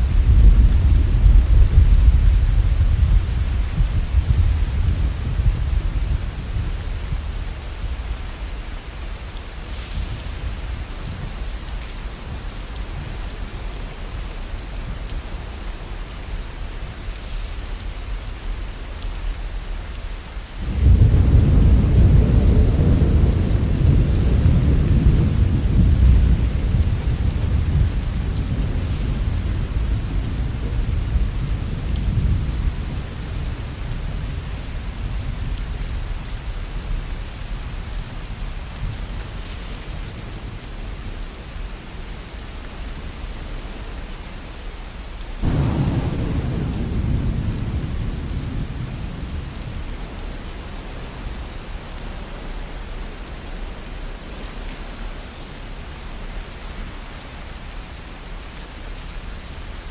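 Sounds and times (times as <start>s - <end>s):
deep thunder rumble: 0.0s - 8.8s, 20.6s - 36.9s, 45.4s - 51.7s
heavy rain: 0.0s - 59.9s.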